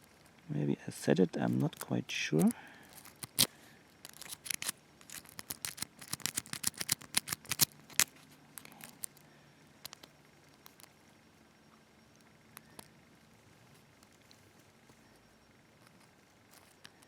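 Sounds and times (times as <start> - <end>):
lock pick clicking against pins: 1.6 - 9.2.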